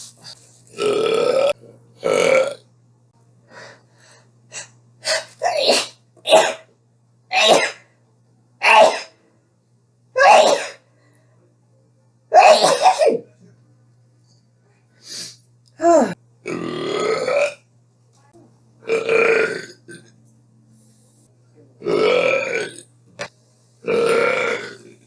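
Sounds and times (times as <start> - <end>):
person belching loudly: 0.8 - 2.6, 15.8 - 17.6, 18.9 - 20.1, 21.8 - 22.9, 23.8 - 25.0.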